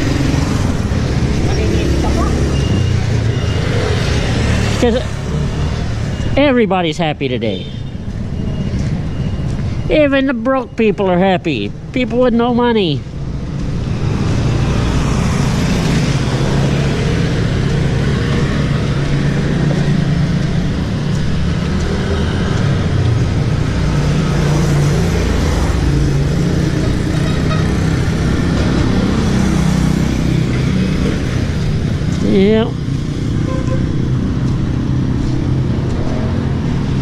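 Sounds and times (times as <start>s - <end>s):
traffic rumble: 0.0s - 37.0s.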